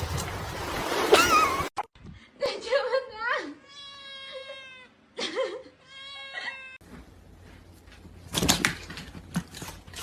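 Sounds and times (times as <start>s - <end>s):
cat meowing: 3.6s - 4.9s, 5.8s - 6.8s.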